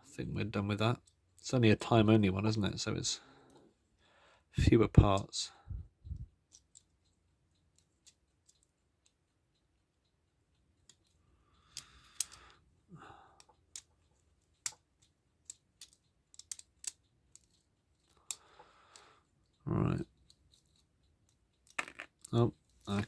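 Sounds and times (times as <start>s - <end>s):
clicks and taps of metal parts: 6.3s - 12.6s, 13.3s - 23.0s.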